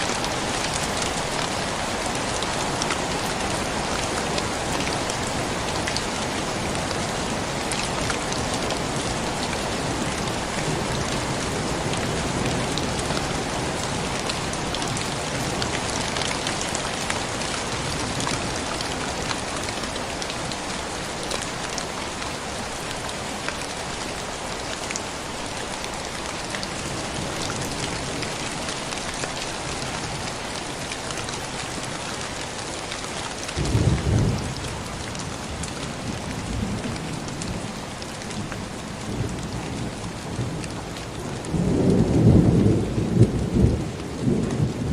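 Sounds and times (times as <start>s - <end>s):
heavy rain: 0.0s - 44.9s
raindrops ticking on surface: 0.0s - 44.9s
low rumble of thunder: 33.6s - 37.7s, 41.3s - 44.9s.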